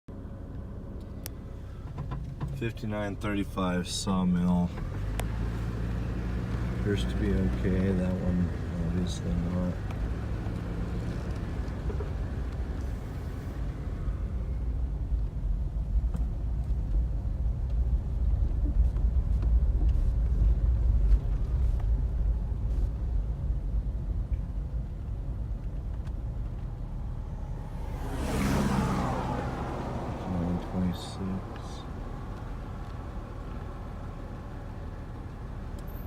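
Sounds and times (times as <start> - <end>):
car engine and tyres rumbling: 0.1 - 36.0
rushing swell of passing air: 27.2 - 30.3.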